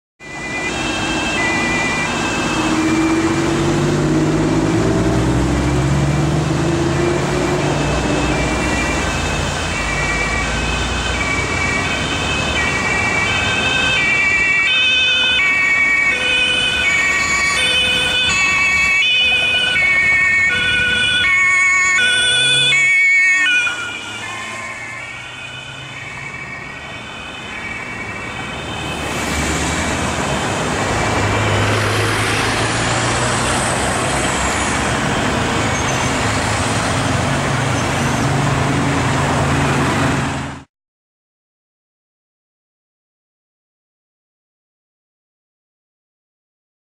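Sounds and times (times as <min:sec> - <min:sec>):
two-tone police siren: 0:00.2 - 0:36.7
car engine accelerating: 0:02.8 - 0:09.6.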